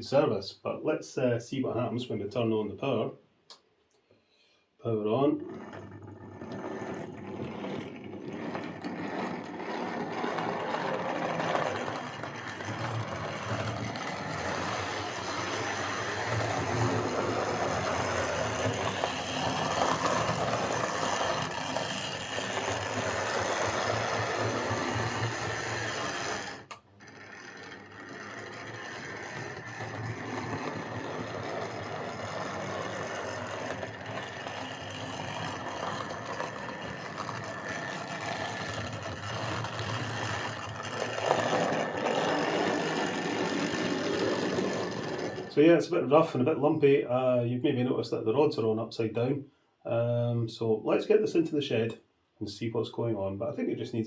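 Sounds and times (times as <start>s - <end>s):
model locomotive running rough: 5.4s - 45.6s.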